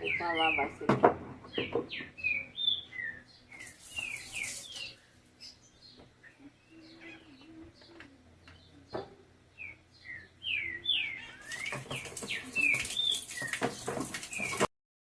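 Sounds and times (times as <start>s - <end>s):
small birds chirping: 0.0s - 14.7s
rustling clattering noise: 11.4s - 14.7s.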